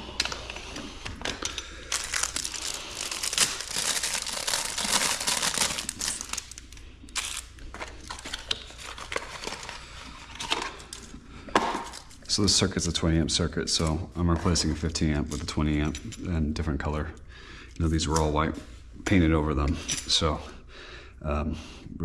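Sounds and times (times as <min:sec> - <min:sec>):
packaging crinkling: 0:01.8 - 0:11.1.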